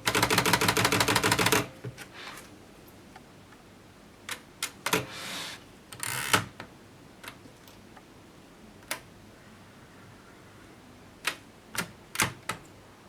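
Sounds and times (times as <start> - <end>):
typewriter mechanical clicks: 0.0 - 1.7
typewriter carriage rasping slide: 5.0 - 5.6.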